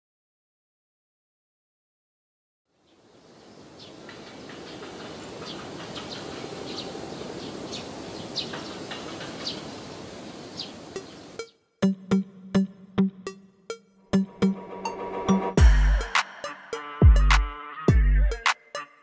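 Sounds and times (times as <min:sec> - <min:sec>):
birds chirping: 0:02.8 - 0:12.3.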